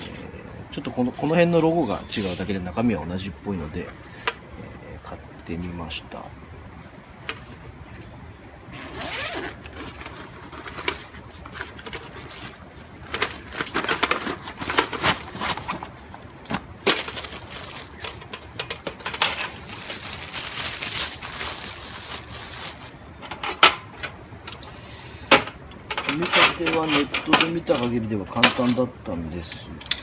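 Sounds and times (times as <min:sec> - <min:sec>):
packaging rustling: 0:08.9 - 0:23.0
metal parts clinking and scraping: 0:09.4 - 0:15.9, 0:16.8 - 0:23.8, 0:25.9 - 0:28.8.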